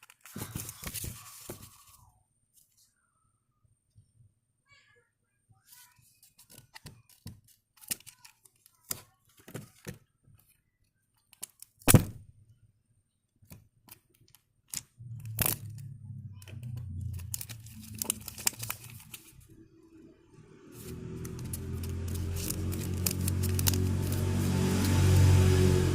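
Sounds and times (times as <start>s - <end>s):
packaging being torn open: 7.8s - 8.4s, 17.0s - 19.4s, 20.8s - 25.0s.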